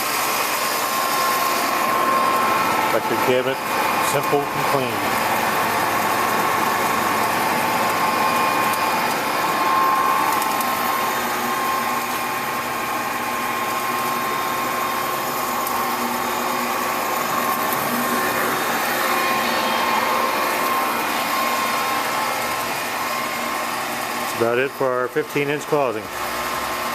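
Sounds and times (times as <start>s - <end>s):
lathe motor whirring and whining: 0.0s - 26.9s.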